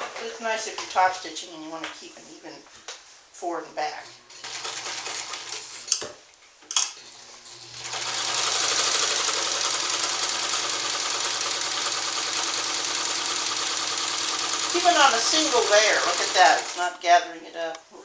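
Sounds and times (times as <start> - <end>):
sewing machine stitching: 4.3 - 6.0, 7.1 - 17.0.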